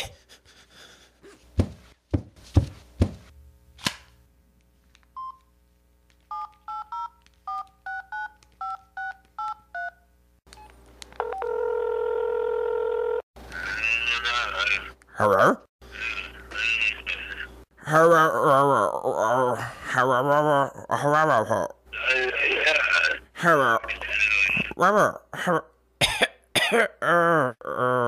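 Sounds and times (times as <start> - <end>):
phone line tone: 11.2 - 13.2.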